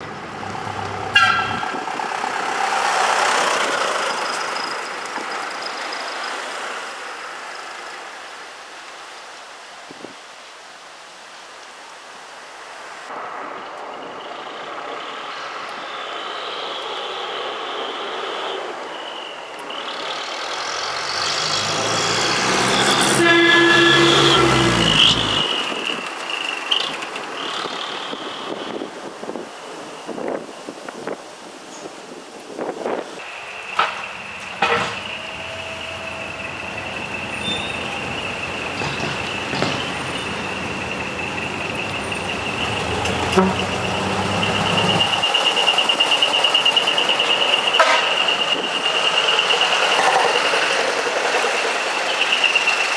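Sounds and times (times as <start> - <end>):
truck diesel engine: 0.0 - 8.4, 13.1 - 29.9, 32.9 - 52.9
air horns sounding a chord: 20.8 - 25.4, 33.8 - 45.3.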